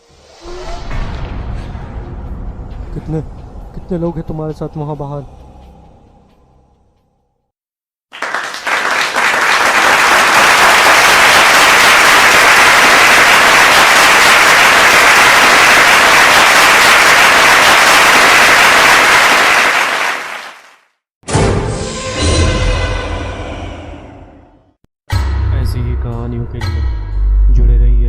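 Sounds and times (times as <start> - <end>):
crowd clapping: 8.1 - 20.9.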